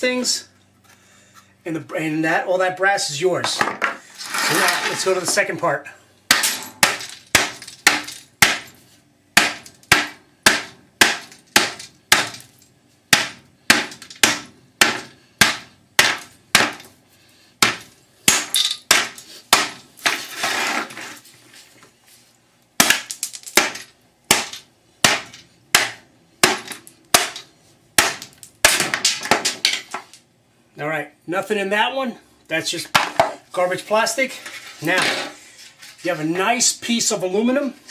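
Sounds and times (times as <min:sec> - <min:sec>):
hammer striking radiator: 0:06.3 - 0:08.7.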